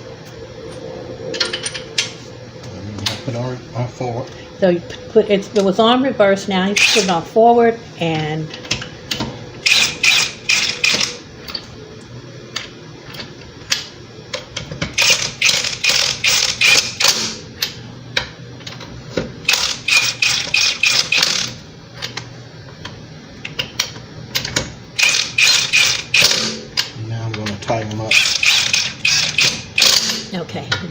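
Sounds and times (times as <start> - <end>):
impact wrench hammering: 6.8 - 7.2, 9.6 - 11.2, 14.9 - 17.4, 19.5 - 21.6, 24.5 - 26.6, 28.1 - 30.3.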